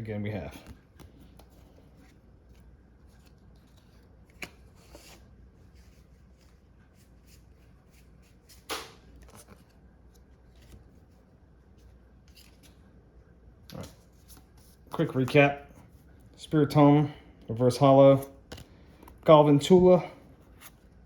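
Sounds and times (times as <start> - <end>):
cards rustling: 0.0 - 13.0, 13.6 - 21.0.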